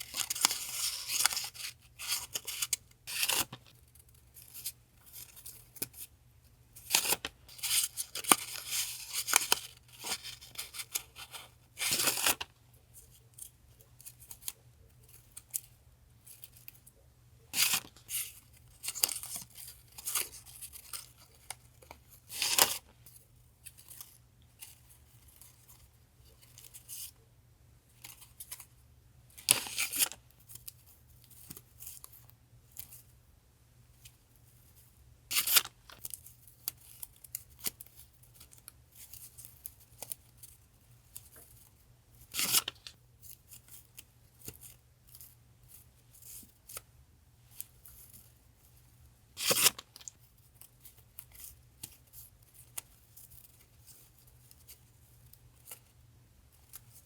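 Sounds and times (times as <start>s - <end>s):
paper packaging rustling: 0.0s - 3.8s, 6.8s - 12.5s, 42.3s - 42.9s
faint refrigerator hum: 0.0s - 57.0s.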